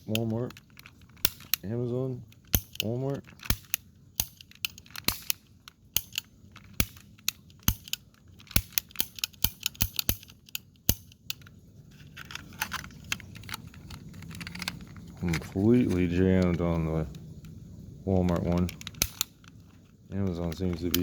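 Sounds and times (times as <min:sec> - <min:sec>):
cap gun trigger clicks: 0:02.5 - 0:11.4, 0:18.3 - 0:19.4
cap gun snaps: 0:07.6 - 0:11.2, 0:18.8 - 0:19.4.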